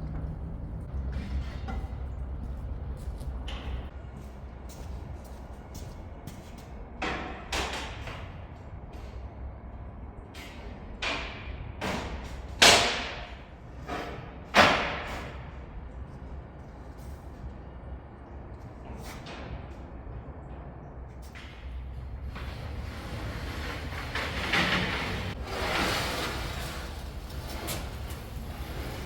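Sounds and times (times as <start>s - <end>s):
low steady hum: 0.0s - 6.2s.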